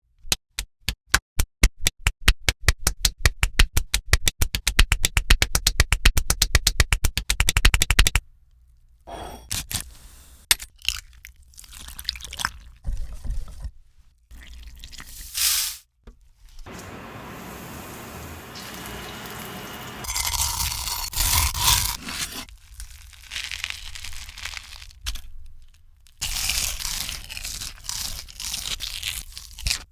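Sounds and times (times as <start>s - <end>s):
crunchy food crunching: 18.6s - 29.9s.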